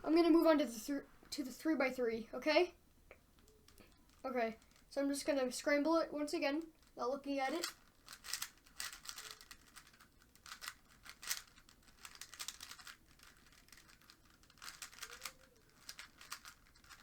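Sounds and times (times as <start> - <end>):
plastic puzzle cube clicking: 3.4 - 4.9, 6.6 - 17.0.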